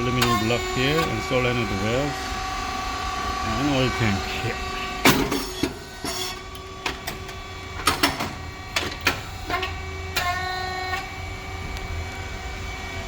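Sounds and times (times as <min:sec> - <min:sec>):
machine pump and motor hum: 0:00.0 - 0:13.0
steady whining tone: 0:00.0 - 0:13.0
sharp clicks and knocks from machine: 0:05.0 - 0:11.1.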